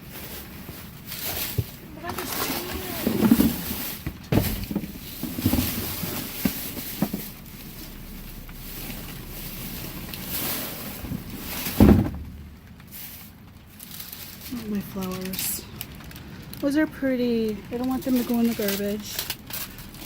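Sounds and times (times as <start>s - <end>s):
rummaging and handling noise: 0.0s - 20.0s
knocks and bumps: 0.6s - 7.4s, 11.0s - 12.8s.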